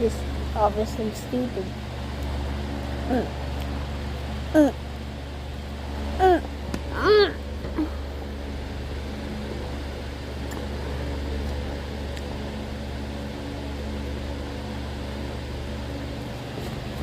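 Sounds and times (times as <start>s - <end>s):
low mechanical hum: 0.0s - 17.0s.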